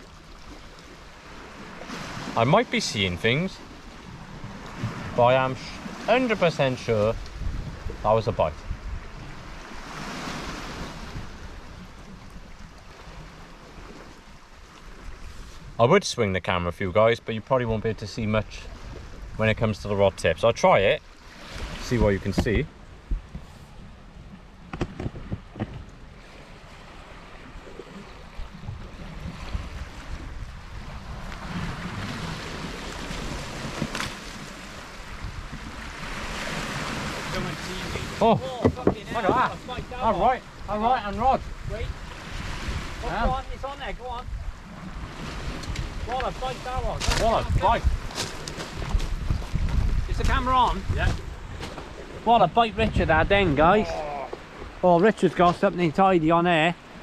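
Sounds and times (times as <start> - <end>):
sea surf washing on shore: 0.0 - 57.0
wind rumbling on microphone: 3.7 - 6.1, 6.7 - 15.8, 21.0 - 54.8.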